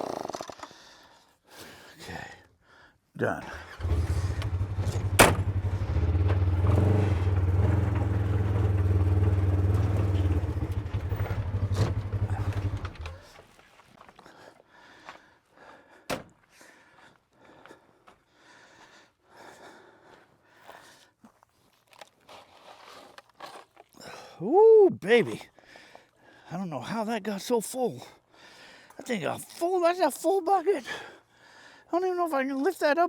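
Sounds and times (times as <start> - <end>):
small gas engine running: 3.5 - 13.4
sharp knock: 5.1 - 5.5.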